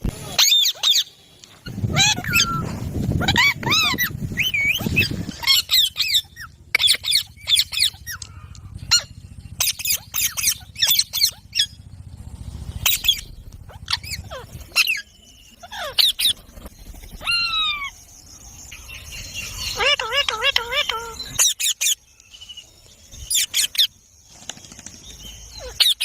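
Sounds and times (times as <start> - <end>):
parrots screeching: 0.3 - 1.2, 1.8 - 11.8, 12.8 - 15.0, 15.6 - 16.4, 17.2 - 17.9, 19.4 - 22.0, 25.6 - 26.0.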